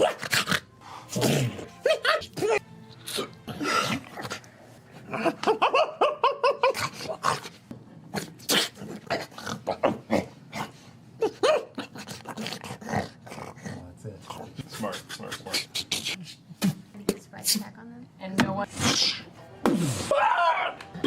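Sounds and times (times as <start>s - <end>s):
person imitating dog barks: 1.2s - 2.6s.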